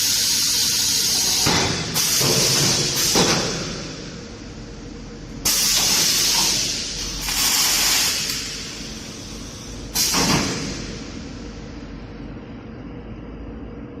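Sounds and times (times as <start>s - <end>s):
welding machine hissing: 0.0s - 4.1s, 5.4s - 11.2s
welding machine thud: 10.0s - 11.0s.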